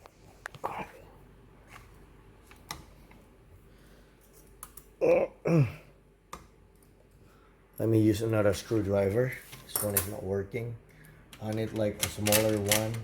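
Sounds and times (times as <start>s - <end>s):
person grunting: 5.0s - 6.0s.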